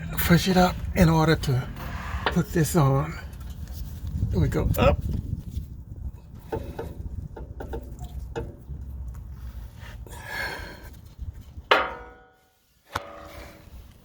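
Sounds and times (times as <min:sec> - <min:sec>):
small knocks and scrape: 0:05.1 - 0:09.6, 0:11.4 - 0:14.0
sharp metallic clank: 0:11.7 - 0:13.7.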